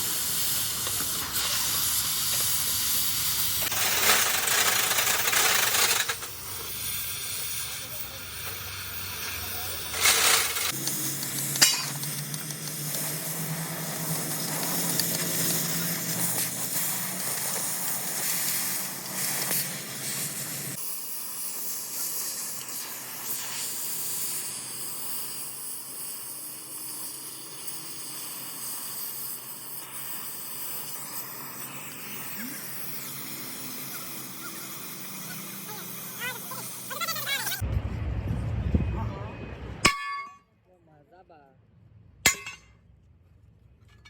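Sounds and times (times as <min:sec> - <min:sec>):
gas cutting torch hissing: 0:00.0 - 0:37.6
low hum: 0:37.6 - 0:40.4.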